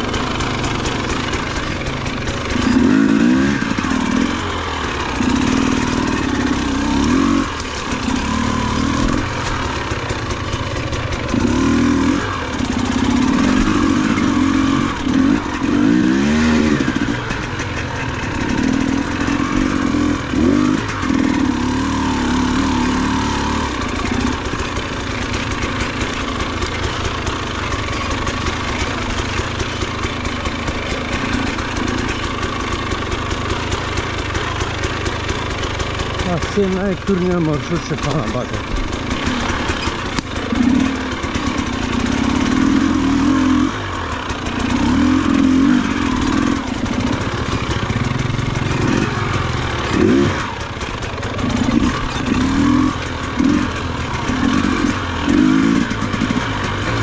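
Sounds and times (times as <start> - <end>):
off-road motorcycle engine revving: 0.0 - 57.0.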